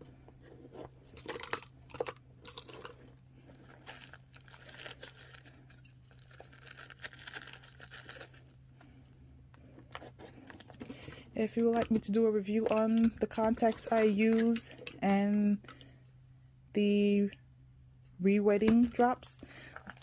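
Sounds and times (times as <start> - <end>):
packaging crinkling and rustling: 0.4 - 8.6, 9.8 - 15.1.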